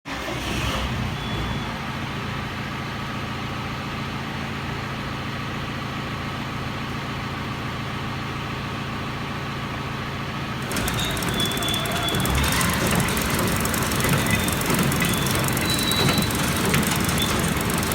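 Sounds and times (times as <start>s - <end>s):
baler rattling: 10.6s - 17.9s
thin high squeal: 10.6s - 17.9s
tractor engine running: 10.6s - 17.9s.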